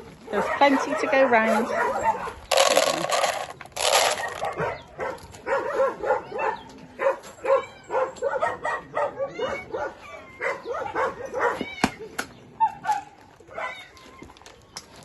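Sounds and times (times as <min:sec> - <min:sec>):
dogs barking: 0:00.0 - 0:02.8, 0:03.8 - 0:11.8, 0:12.5 - 0:14.0
loud rustling noise: 0:02.5 - 0:04.6.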